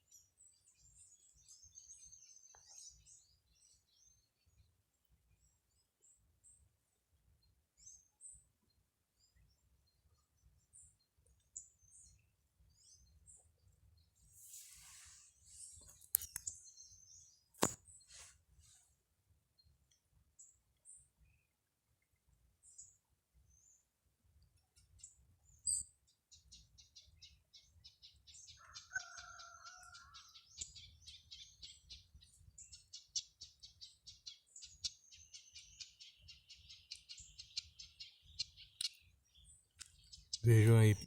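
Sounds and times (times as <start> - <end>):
rustle: 14.2 - 16.7, 17.6 - 19.0
birds chirping: 32.7 - 41.0.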